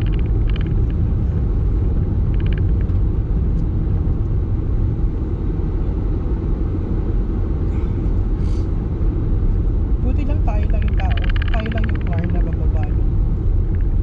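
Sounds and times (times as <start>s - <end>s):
faint ticks: 0.0s - 1.0s, 2.3s - 3.0s
car cabin engine and tyre rumble: 0.0s - 14.0s.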